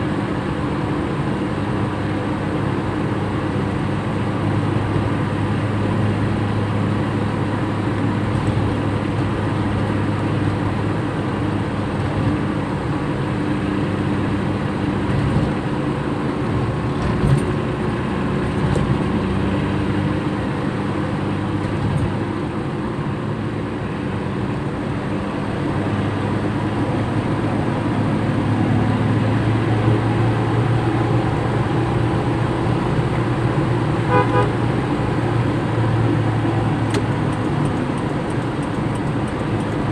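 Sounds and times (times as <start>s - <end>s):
car engine and road drone: 0.0s - 39.9s
car horn toots: 34.0s - 35.0s.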